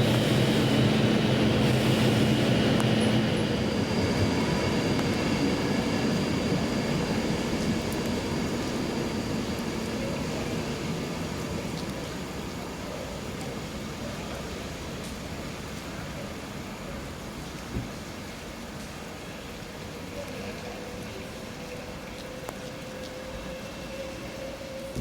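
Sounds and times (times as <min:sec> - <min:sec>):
train running past: 0:00.0 - 0:25.0.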